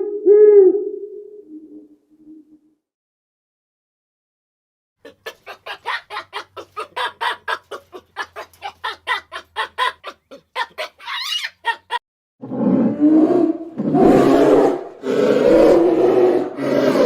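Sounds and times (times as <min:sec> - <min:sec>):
rising and falling animal call: 0:10.8 - 0:17.0.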